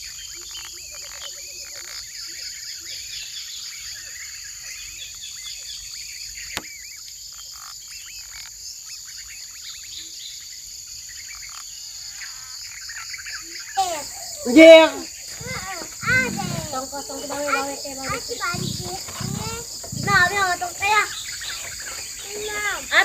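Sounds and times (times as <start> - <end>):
high insect drone: 0.0 - 23.0
short chirping animal calls: 11.2 - 23.0.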